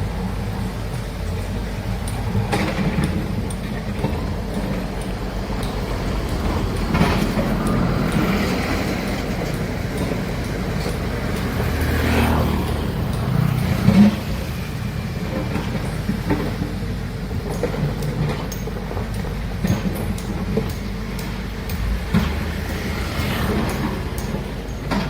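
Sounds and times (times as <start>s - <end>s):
excavator diesel engine drone: 0.0s - 25.0s
metal clanks and knocks: 15.3s - 25.0s.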